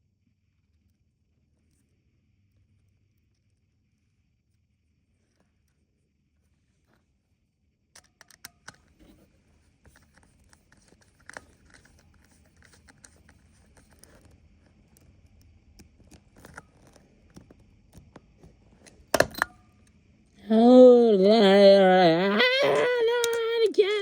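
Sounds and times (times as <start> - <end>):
small clicks and scrapes: 8.0 - 20.0.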